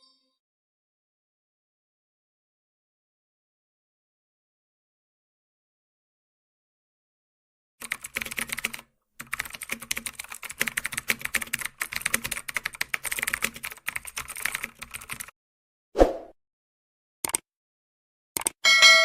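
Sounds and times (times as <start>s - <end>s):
rapid keyboard typing: 7.8s - 15.3s, 17.2s - 17.4s, 18.4s - 18.6s.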